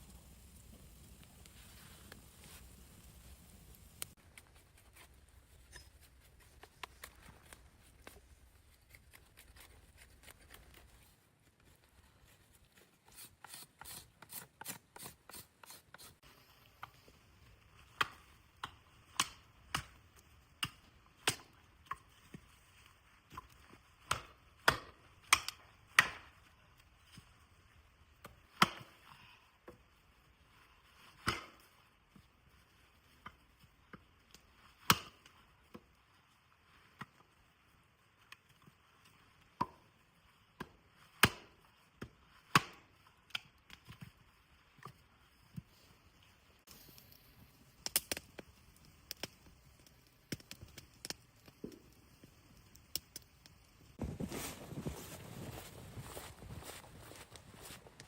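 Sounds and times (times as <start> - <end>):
wood being chopped: 40.6 - 41.5, 42.5 - 42.8.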